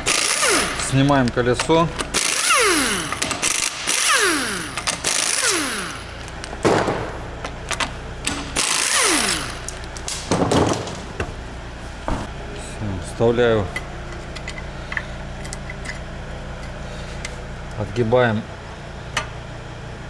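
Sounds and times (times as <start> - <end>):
motor whining down: 0.0 - 1.1, 2.0 - 6.4, 8.3 - 9.8
impact wrench hammering: 0.0 - 11.4.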